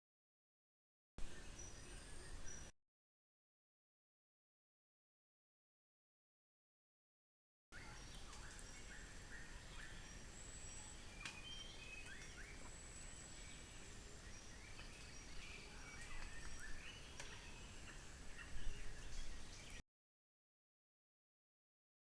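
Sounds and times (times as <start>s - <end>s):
birds chirping and whistling: 1.2s - 2.7s, 7.8s - 19.8s.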